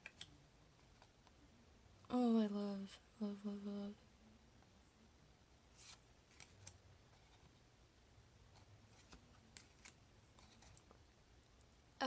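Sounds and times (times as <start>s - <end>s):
cards being handled: 5.7s - 7.6s, 8.5s - 11.0s.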